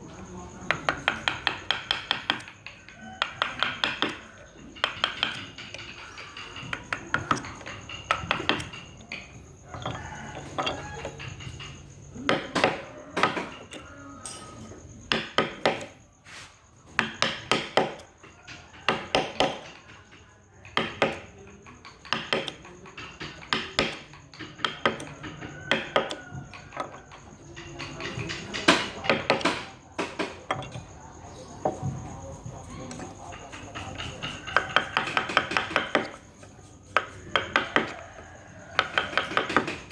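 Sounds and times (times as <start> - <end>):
mallet tapping chisel into wood: 0.6 - 16.0, 16.9 - 31.0, 32.9 - 39.9.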